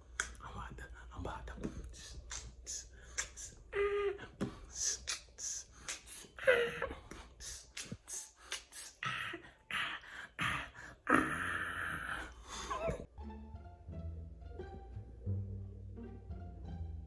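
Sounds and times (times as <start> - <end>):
man whispering: 0.0 - 6.4, 7.2 - 10.8
man breathing: 1.7 - 11.1.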